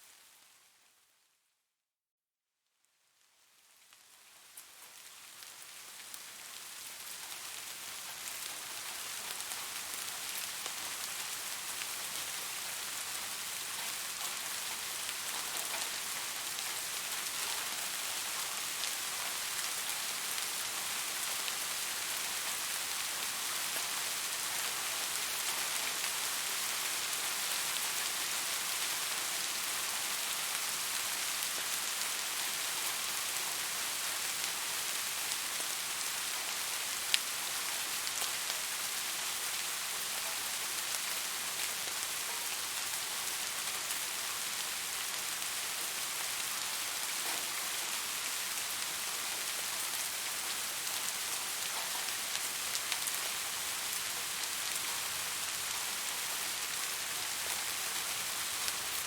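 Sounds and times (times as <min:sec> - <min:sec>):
steady rain falling: 0:00.0 - 0:01.2, 0:02.9 - 0:59.0.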